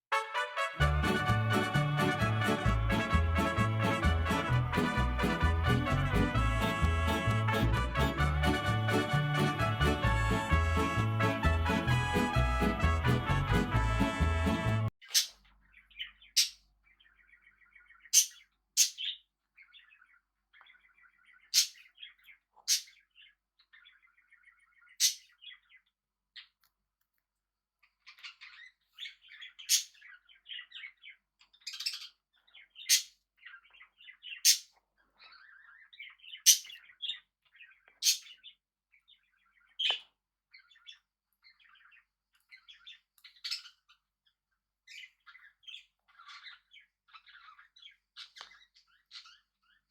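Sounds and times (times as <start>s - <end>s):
parakeets chirping: 0.9s - 26.5s, 28.0s - 44.0s, 44.8s - 49.9s.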